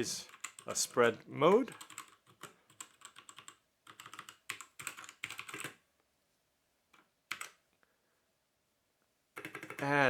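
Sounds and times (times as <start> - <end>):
mechanical keyboard typing: 0.3 - 0.8, 1.7 - 5.8, 7.3 - 7.6, 9.4 - 9.9.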